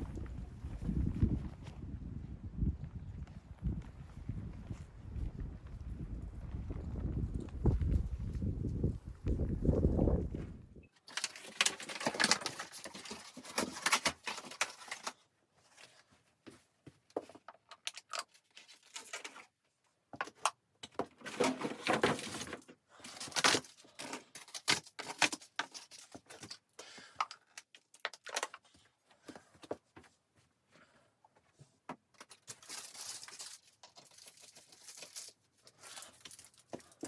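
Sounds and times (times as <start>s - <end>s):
rustling with light clicks: 11.0s - 30.6s, 31.2s - 37.0s.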